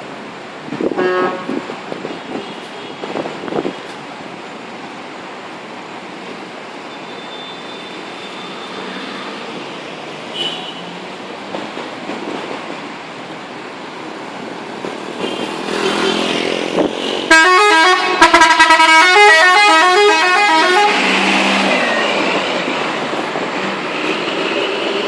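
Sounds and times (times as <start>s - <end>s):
bus engine and road noise: 0.0s - 25.0s
musical bus horn melody: 1.0s - 1.5s, 17.3s - 21.0s.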